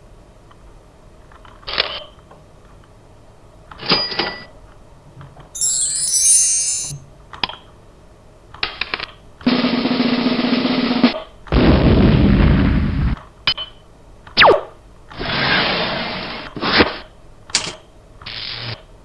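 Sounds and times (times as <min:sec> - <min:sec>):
high glittering chime: 0:05.6 - 0:07.0.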